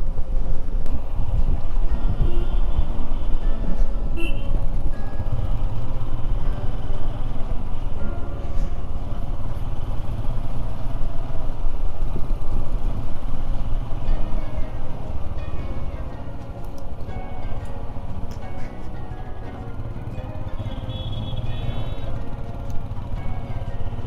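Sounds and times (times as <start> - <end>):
wind rumble on microphone: 0.0 - 5.4
faint background music: 0.0 - 24.0
motorcycle engine running: 0.0 - 24.0.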